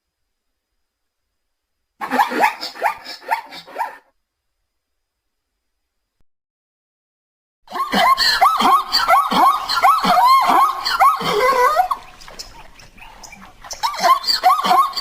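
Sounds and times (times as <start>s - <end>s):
zebra yelping barks: 2.0s - 4.1s, 13.6s - 15.0s.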